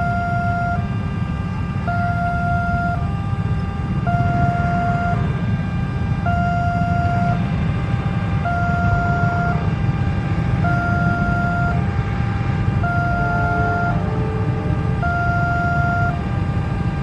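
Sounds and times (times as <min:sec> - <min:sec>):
low rumble of road vehicles: 0:00.0 - 0:17.0
two-tone level crossing siren: 0:00.0 - 0:17.0.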